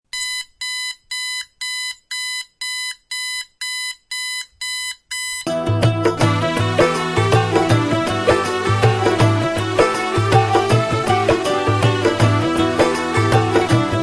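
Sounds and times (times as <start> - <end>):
electronic alarm beeping: 0.1 - 5.5
loud music with a beat: 5.5 - 14.0.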